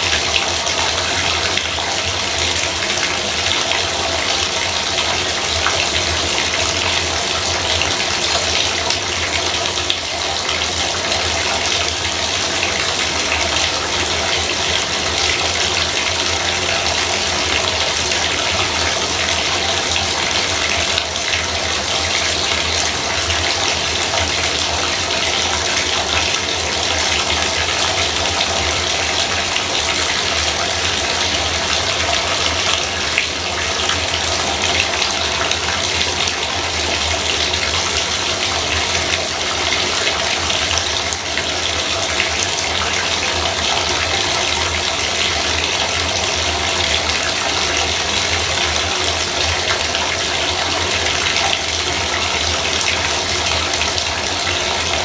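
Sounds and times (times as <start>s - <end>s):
faucet water pouring into tub: 0.0s - 55.0s.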